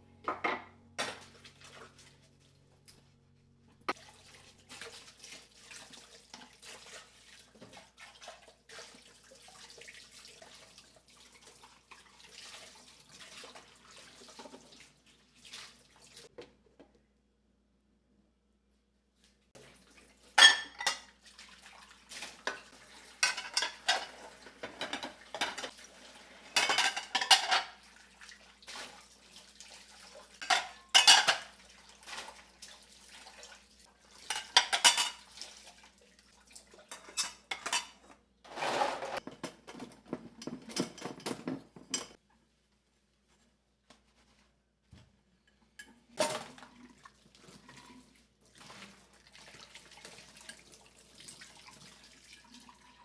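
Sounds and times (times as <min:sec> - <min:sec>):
dishes and cutlery clattering: 0:00.2 - 0:02.0, 0:20.4 - 0:21.1, 0:22.4 - 0:25.8, 0:26.5 - 0:27.8, 0:30.4 - 0:31.6, 0:34.2 - 0:35.3, 0:36.9 - 0:42.2.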